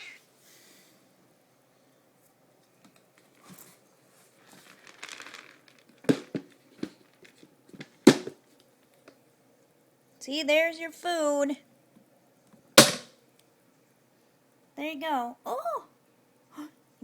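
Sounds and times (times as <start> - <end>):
bag of dry food rustling: 3.4 - 7.4.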